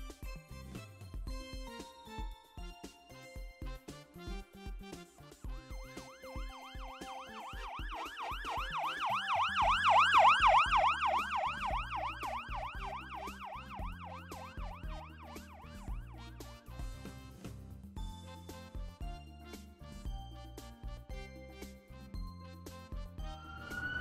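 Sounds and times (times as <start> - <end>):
cheerful background music: 0.0 - 24.0
siren yelping: 6.0 - 16.0, 23.2 - 24.0.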